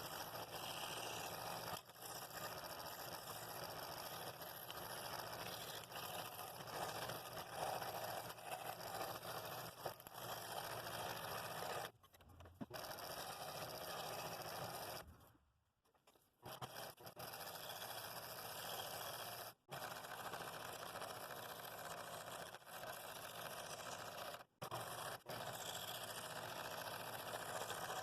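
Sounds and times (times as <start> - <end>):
scroll saw cutting thin wood: 0.0 - 15.1, 16.5 - 20.4.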